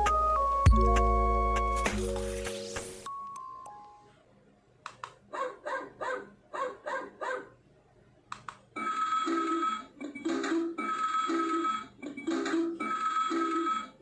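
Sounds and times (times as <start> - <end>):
recorded dog barks: 5.3 - 7.6.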